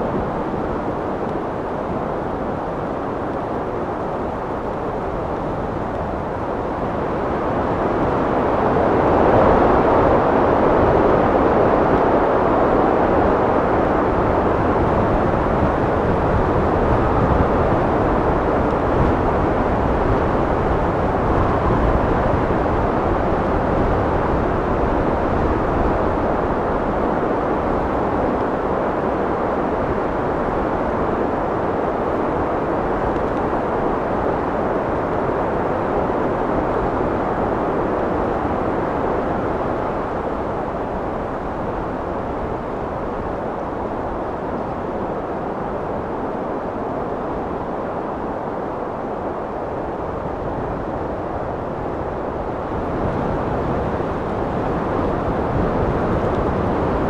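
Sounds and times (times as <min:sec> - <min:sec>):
wind blowing: 0:00.0 - 0:57.0.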